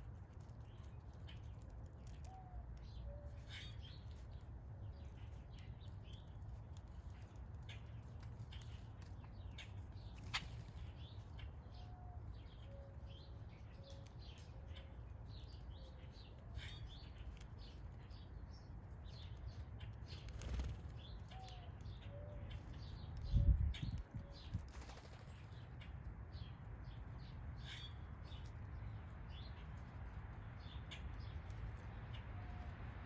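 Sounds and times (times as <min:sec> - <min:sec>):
songbirds chirping: 0:00.0 - 0:33.0.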